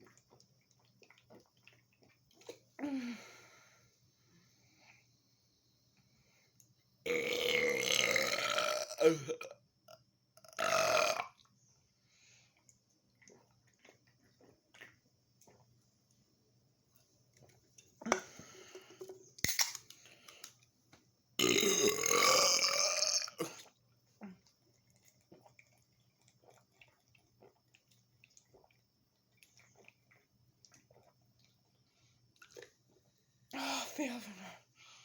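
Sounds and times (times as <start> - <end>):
person burping: 7.1 - 9.6, 10.4 - 11.3, 21.4 - 23.7.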